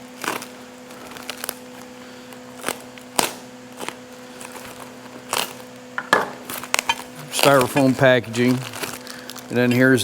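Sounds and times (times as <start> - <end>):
fan humming: 0.0 - 10.0
cardboard and styrofoam rustling: 6.4 - 10.0.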